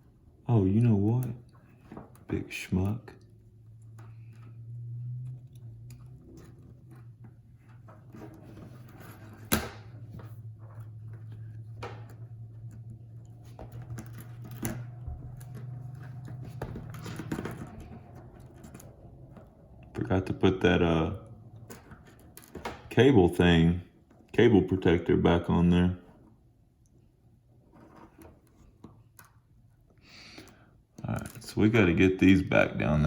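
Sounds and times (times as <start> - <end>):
low hum: 3.1 - 22.6.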